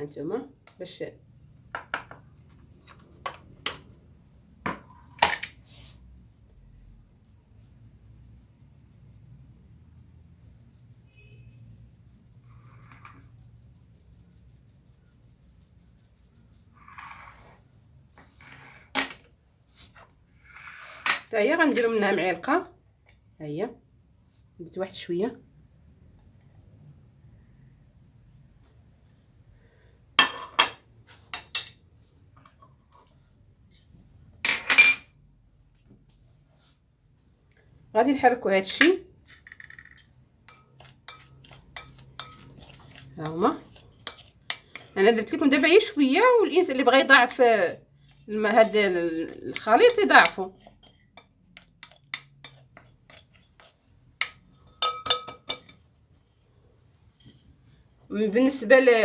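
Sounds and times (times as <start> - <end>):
brushing scrapes: 4.9 - 18.9, 19.6 - 21.1, 35.6 - 36.9, 39.2 - 45.5, 48.0 - 54.8, 55.5 - 58.1
metal spoon clinking on dish: 39.5 - 45.0, 49.5 - 56.5.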